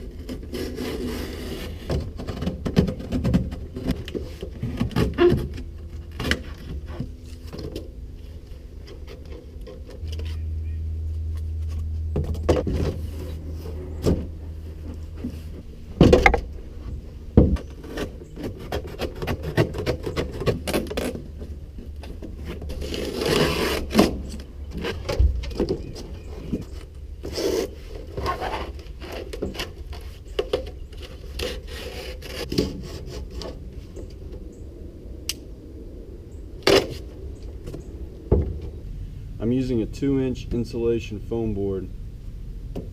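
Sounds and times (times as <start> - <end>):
scraping and rubbing: 0.0 - 10.6, 11.5 - 34.6.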